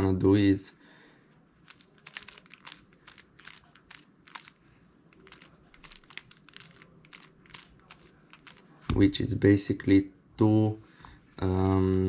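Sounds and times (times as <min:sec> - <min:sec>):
puzzle cube plastic clicks: 0:01.6 - 0:08.9.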